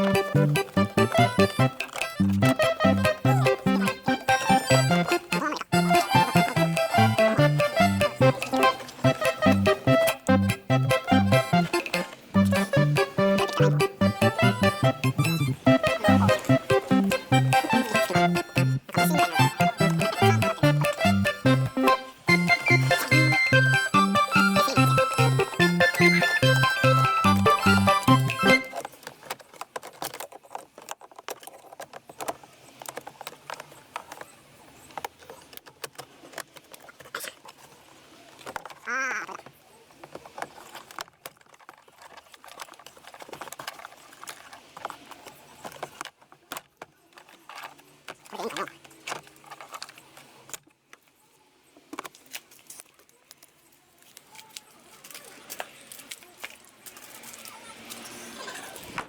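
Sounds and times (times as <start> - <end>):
hands handling plastic parts: 0.0 - 51.1.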